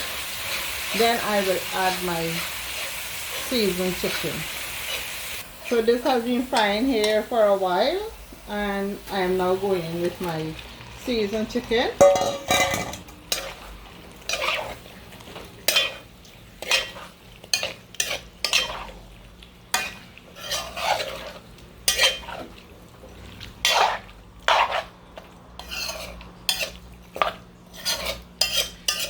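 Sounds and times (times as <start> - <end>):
paste frying in a pot: 0.0 - 29.0
spoon scraping a pot: 12.0 - 14.9, 15.7 - 19.0, 19.7 - 22.6, 23.6 - 24.9, 25.6 - 29.0.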